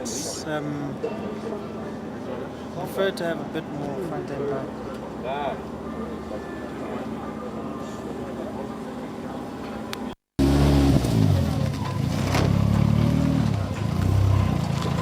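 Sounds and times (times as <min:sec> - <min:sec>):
race car engine accelerating: 0:10.4 - 0:15.0.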